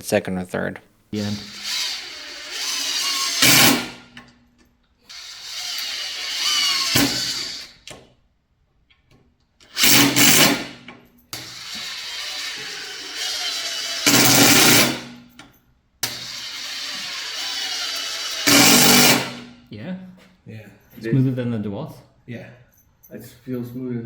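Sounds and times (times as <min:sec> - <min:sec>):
cordless impact driver running: 0:01.4 - 0:04.0, 0:05.1 - 0:07.8, 0:09.7 - 0:10.8, 0:11.4 - 0:15.1, 0:16.0 - 0:19.5.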